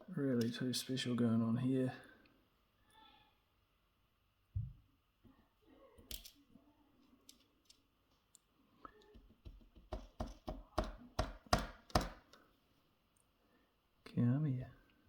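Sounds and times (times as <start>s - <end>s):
small metal parts clicking: 6.0s - 6.4s, 7.2s - 8.4s.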